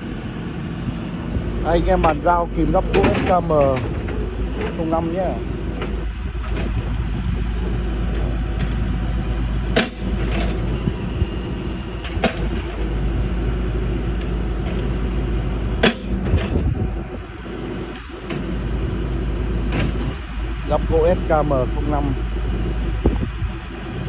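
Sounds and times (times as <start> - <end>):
diesel engine running: 0.0 - 24.0.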